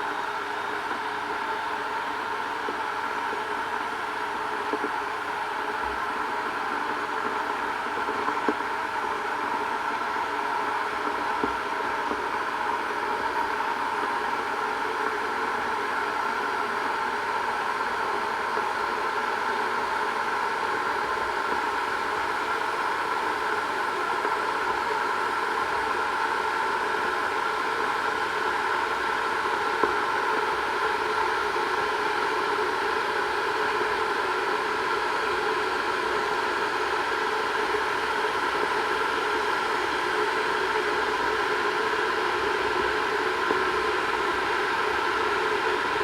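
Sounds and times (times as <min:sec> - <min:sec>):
kettle heating water: 0:00.0 - 0:46.0.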